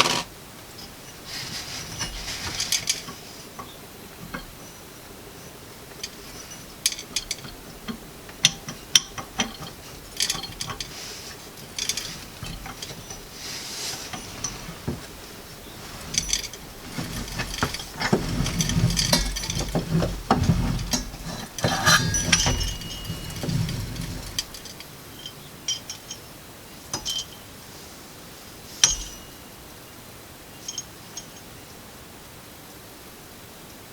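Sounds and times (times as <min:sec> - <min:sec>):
metal rattling and scraping: 0:00.0 - 0:04.7, 0:05.9 - 0:26.1
metal parts clicking and clinking: 0:01.8 - 0:03.3, 0:06.0 - 0:26.3, 0:28.8 - 0:29.4, 0:30.6 - 0:31.4.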